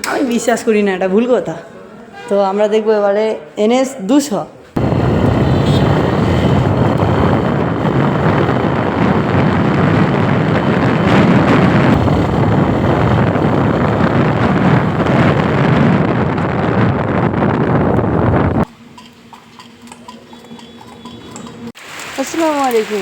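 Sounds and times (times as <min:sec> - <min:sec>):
low vehicle rumble: 0:04.8 - 0:18.7
wind buffeting microphone: 0:04.8 - 0:18.7.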